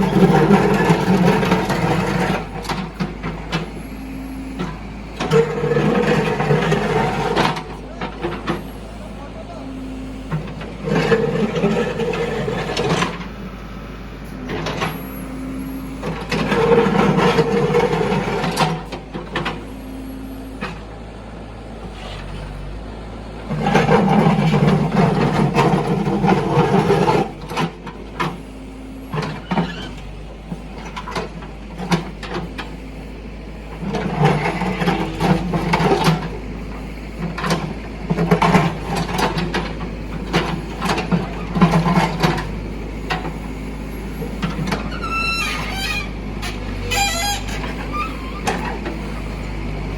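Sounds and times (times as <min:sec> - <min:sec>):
diesel engine under hydraulic load: 0:00.0 - 0:49.9
bucket teeth scraping road surface: 0:44.6 - 0:48.8.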